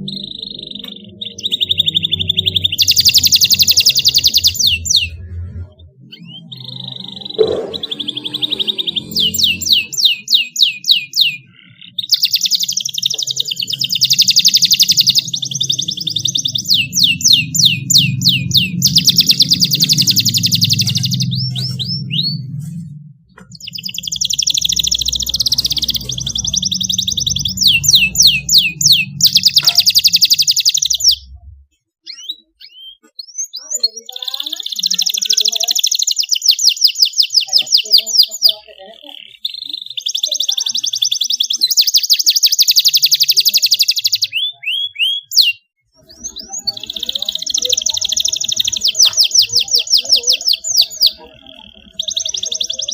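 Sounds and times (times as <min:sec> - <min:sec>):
canary singing trills: 0:00.0 - 0:52.9
low hum: 0:15.2 - 0:30.0, 0:31.0 - 0:31.8.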